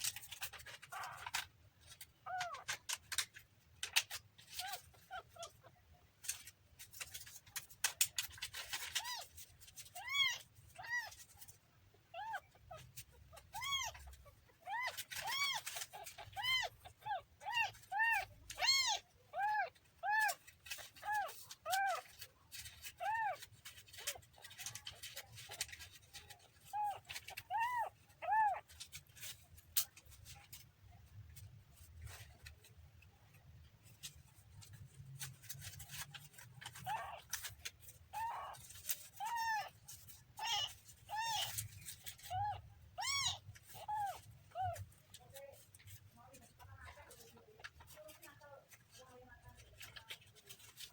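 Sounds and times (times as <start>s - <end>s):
kitten mewing: 12.1s - 28.8s, 36.0s - 45.7s.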